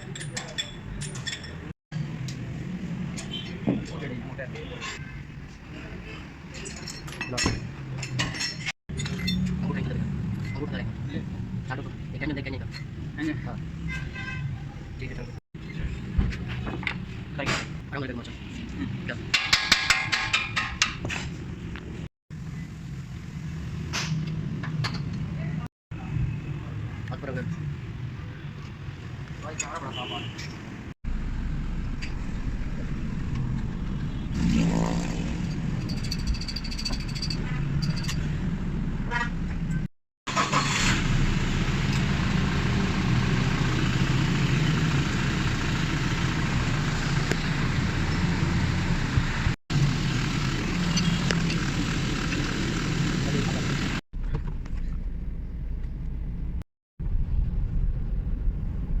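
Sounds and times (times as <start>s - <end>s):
car engine and road drone: 31.1s - 59.0s.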